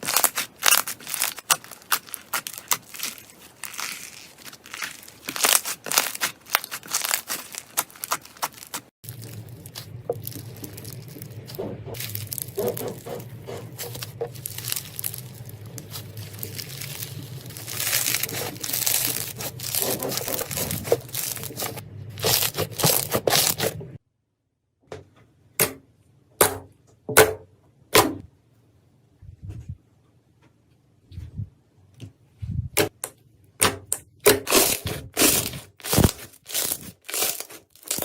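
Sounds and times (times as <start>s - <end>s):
slime crackling and tearing: 0.0s - 23.8s, 34.4s - 38.0s
sharp squishes: 0.0s - 23.9s, 34.3s - 38.0s
low hum: 9.0s - 24.0s.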